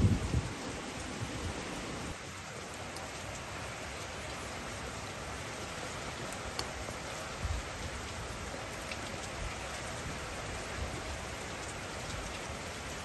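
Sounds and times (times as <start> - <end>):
faint ticks: 6.5 - 6.7.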